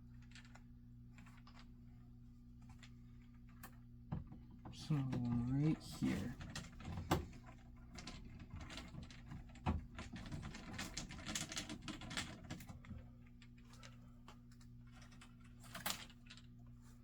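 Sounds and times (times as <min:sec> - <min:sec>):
steady low hum: 0:00.8 - 0:08.3.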